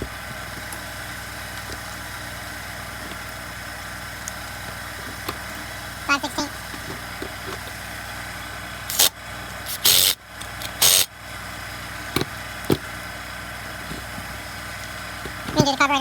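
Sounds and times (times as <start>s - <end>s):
steady background hum: 0.0s - 16.0s.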